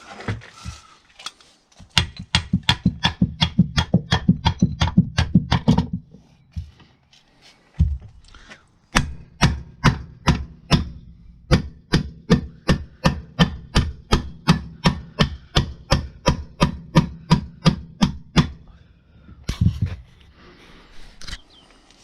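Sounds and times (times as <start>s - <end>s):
hammer strikes: 1.9s - 6.1s, 8.9s - 18.6s.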